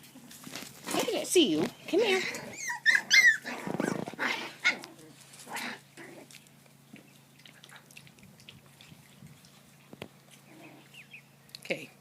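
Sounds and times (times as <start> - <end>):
puppy crying: 2.2 - 5.8.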